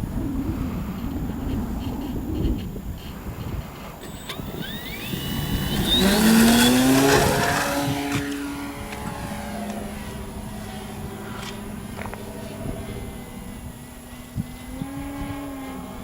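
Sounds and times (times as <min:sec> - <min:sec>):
model plane motor whine flying past: 0:00.1 - 0:16.0.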